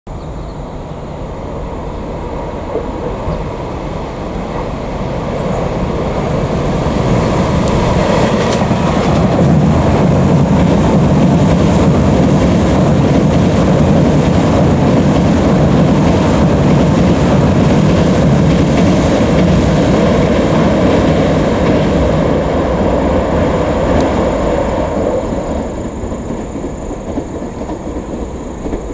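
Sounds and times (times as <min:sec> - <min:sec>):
train rumbling over steel bridge: 0:00.1 - 0:28.9
wheels clickety-clack: 0:02.7 - 0:20.0, 0:23.6 - 0:28.9.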